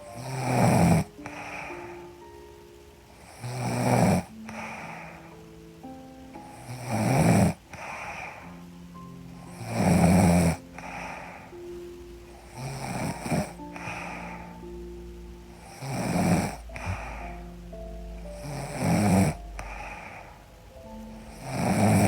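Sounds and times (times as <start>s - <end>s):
woman snoring: 0.0s - 2.2s, 3.2s - 5.4s, 6.5s - 8.6s, 9.4s - 11.6s, 12.4s - 14.7s, 15.5s - 17.5s, 18.2s - 22.0s
soft background music: 0.0s - 22.0s.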